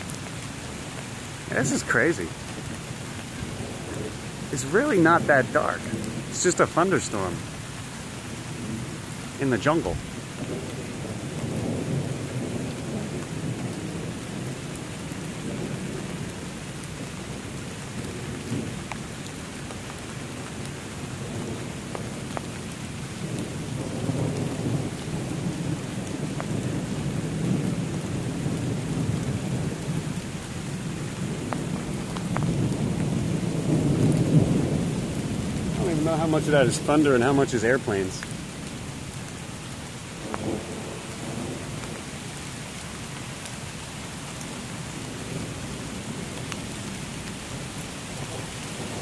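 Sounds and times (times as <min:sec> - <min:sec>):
rain on forest leaves: 0:00.0 - 0:49.0
thunder rumbling: 0:01.5 - 0:07.5, 0:08.4 - 0:18.9, 0:21.0 - 0:38.8, 0:40.2 - 0:42.3, 0:45.0 - 0:49.0
faint drip ticks: 0:31.4 - 0:32.6.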